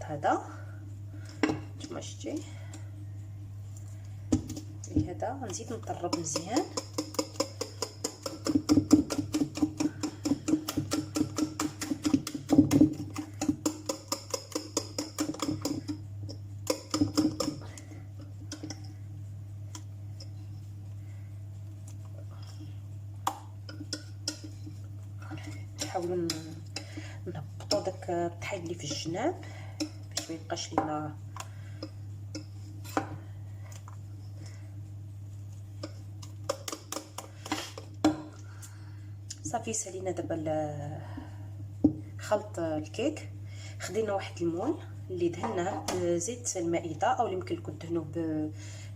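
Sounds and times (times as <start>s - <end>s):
steady low hum: 0.0s - 48.9s
beater knocking against bowl: 6.1s - 16.0s, 16.6s - 17.6s.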